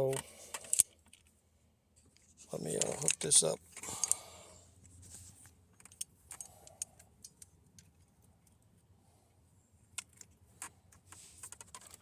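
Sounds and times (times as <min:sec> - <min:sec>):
faint room hum: 0:00.0 - 0:12.0
metallic clicks of hand tools: 0:02.8 - 0:04.2.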